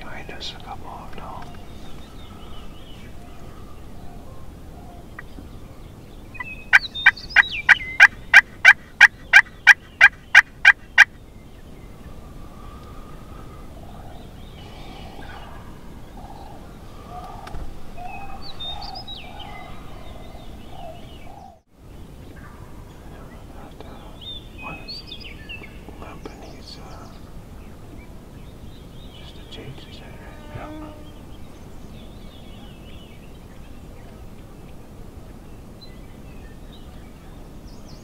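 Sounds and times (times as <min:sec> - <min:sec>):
quiet low turkey calls: 0:00.0 - 0:11.2, 0:11.9 - 0:21.6, 0:22.2 - 0:27.8, 0:29.1 - 0:31.5
turkey yelps: 0:06.7 - 0:11.1.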